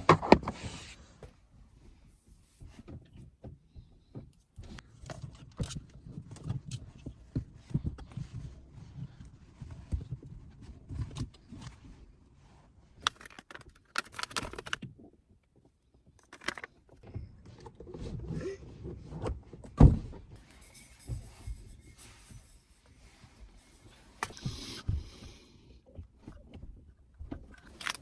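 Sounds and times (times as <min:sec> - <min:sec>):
handling clicks and knocks: 0:15.6 - 0:17.6, 0:26.0 - 0:28.0.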